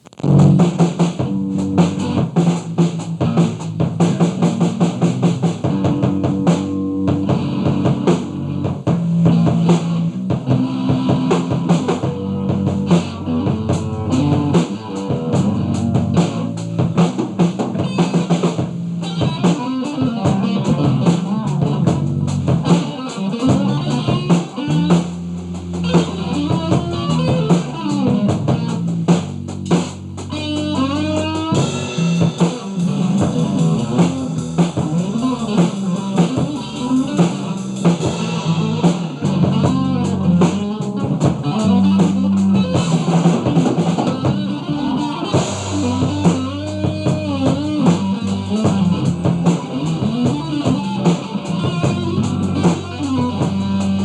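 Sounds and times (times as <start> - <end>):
instrumental rock music: 0.0 - 54.0.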